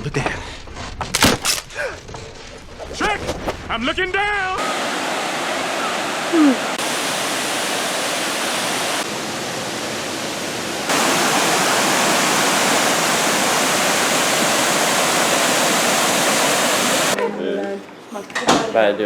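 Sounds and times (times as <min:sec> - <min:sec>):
waterfall rushing: 0:04.6 - 0:17.2.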